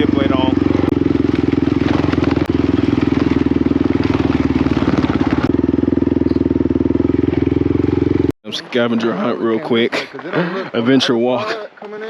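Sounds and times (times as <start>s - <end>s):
off-road vehicle engine running: 0.0s - 11.6s
knocks and rattles: 0.6s - 5.5s.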